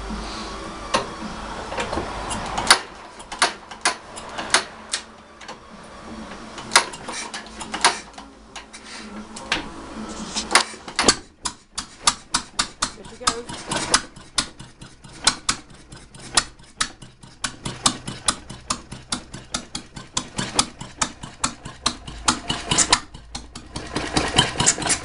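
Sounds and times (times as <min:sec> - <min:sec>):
sharp clicks and knocks: 0:00.9 - 0:05.6, 0:06.6 - 0:09.7, 0:10.3 - 0:25.0
stationary engine running: 0:09.3 - 0:25.0.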